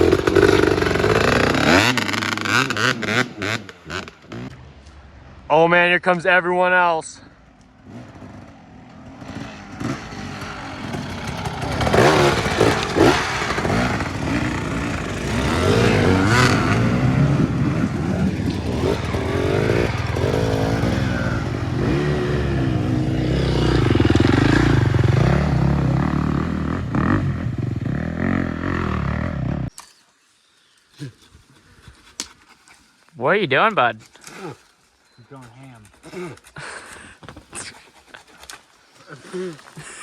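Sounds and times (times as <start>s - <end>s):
motorcycle engines revving: 0.0s - 5.1s, 7.5s - 29.8s.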